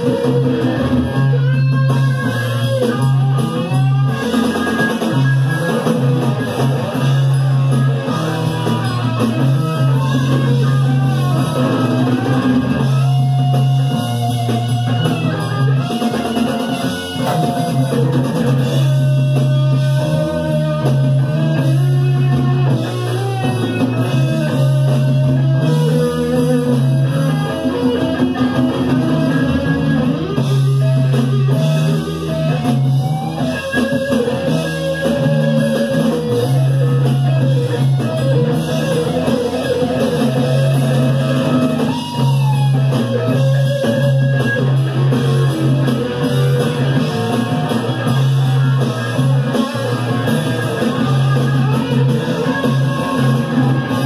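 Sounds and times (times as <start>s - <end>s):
bass guitar: 0.0s - 54.0s
drum kit: 0.0s - 54.0s
electric guitar with bent notes: 0.0s - 54.0s.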